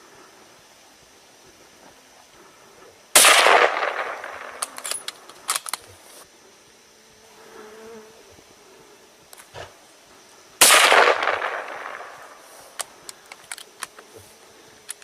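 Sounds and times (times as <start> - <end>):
loud gunshot: 3.2 - 4.6, 10.6 - 12.4.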